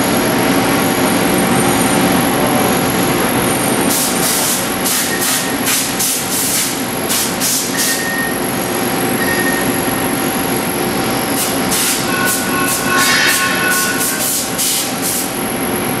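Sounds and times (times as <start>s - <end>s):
thin tool whine: 7.6s - 15.2s.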